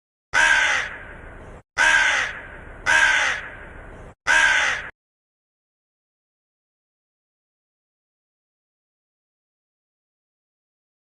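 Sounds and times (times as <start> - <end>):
crow cawing: 0.4 - 1.1, 1.8 - 3.7, 4.3 - 4.9.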